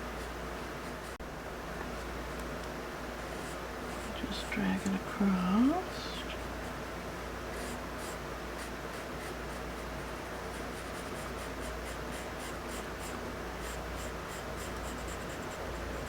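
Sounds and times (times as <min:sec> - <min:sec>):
faint low hum: 0:00.0 - 0:16.0
pencil scratching on paper: 0:07.5 - 0:16.0.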